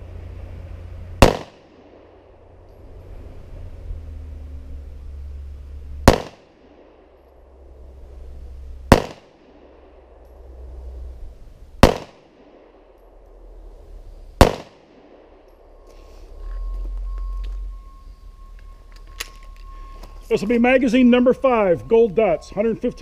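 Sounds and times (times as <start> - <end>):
pistol shots: 1.2 - 2.4, 6.0 - 7.0, 8.9 - 10.2, 11.8 - 13.1, 14.4 - 15.5.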